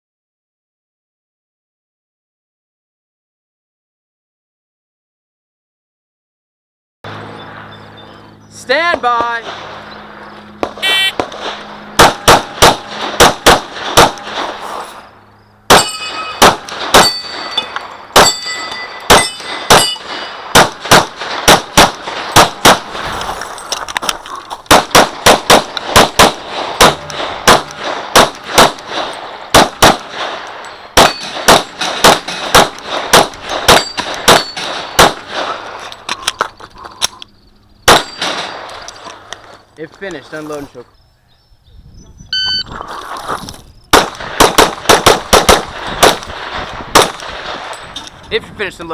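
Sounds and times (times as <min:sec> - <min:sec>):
rapid pistol shots: 0:10.6 - 0:14.6, 0:15.7 - 0:23.1, 0:24.7 - 0:35.6, 0:37.9 - 0:38.9, 0:43.9 - 0:47.7
shot timer beep: 0:10.8 - 0:11.2, 0:42.3 - 0:42.7
steel targets ringing: 0:15.7 - 0:20.5, 0:26.8 - 0:28.5, 0:30.5 - 0:32.5, 0:33.7 - 0:35.0, 0:37.8 - 0:38.8.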